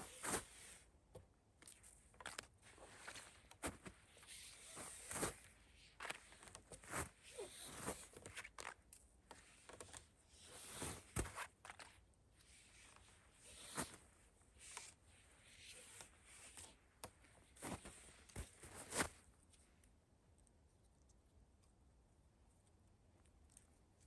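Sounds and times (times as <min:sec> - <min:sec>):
person handling gear: 0:00.0 - 0:00.8, 0:01.6 - 0:19.6.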